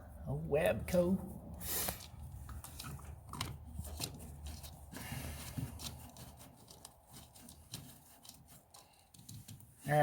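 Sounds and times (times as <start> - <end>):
hand tools clicking and rubbing: 1.6 - 10.0.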